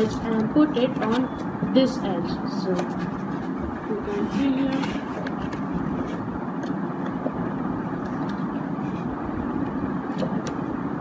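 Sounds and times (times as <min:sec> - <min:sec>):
background rumble and hiss: 0:00.0 - 0:11.0.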